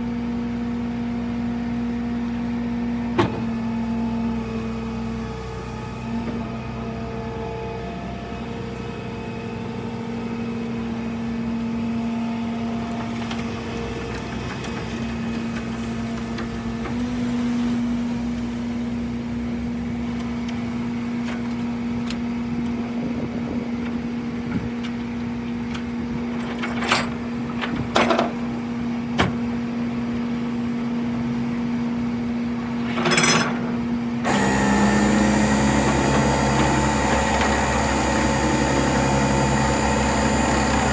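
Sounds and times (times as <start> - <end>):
vehicle droning hum: 0.0 - 40.9.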